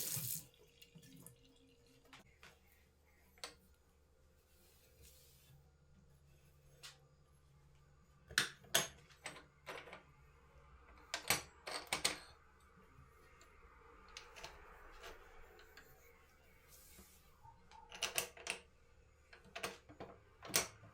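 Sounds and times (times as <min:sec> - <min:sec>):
soft rustle: 0:04.3 - 0:06.9.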